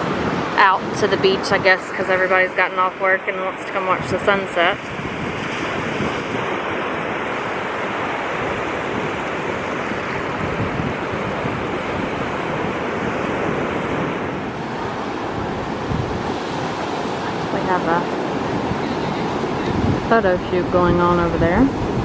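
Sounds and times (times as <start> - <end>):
waves washing onto beach: 0.0 - 22.0
wind buffeting microphone: 0.0 - 22.0.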